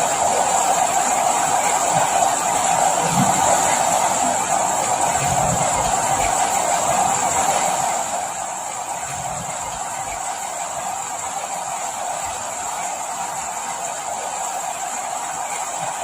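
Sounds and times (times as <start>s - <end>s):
steady rain: 0.0s - 16.0s.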